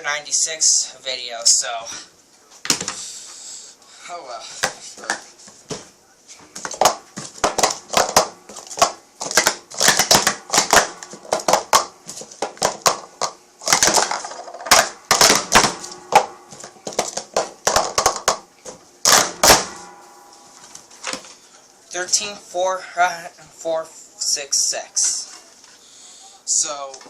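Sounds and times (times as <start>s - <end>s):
plastic cups clattering: 6.5s - 19.7s.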